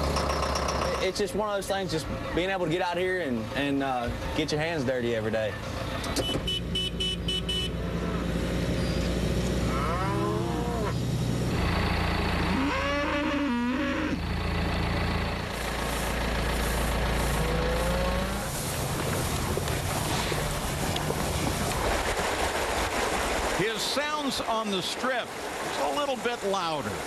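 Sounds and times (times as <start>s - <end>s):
engine running low: 0.0s - 22.6s
cattle mooing: 9.6s - 11.0s, 12.4s - 14.2s, 17.3s - 18.5s.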